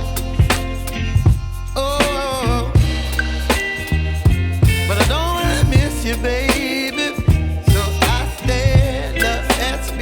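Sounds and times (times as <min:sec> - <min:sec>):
pop music with bass beat: 0:00.0 - 0:10.0.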